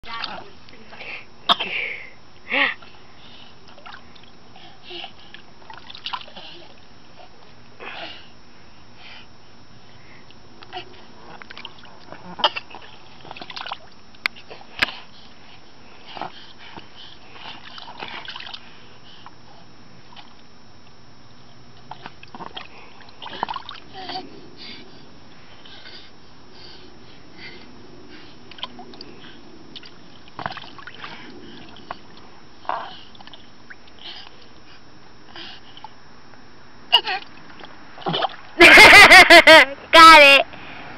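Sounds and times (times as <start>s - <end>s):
pool water splashing: 11.5s - 14.0s, 29.8s - 32.3s.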